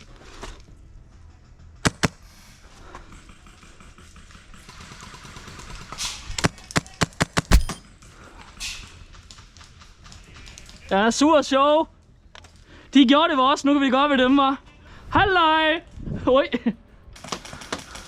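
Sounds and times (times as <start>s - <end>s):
airsoft rifle shots: 1.8s - 2.2s, 5.9s - 7.9s.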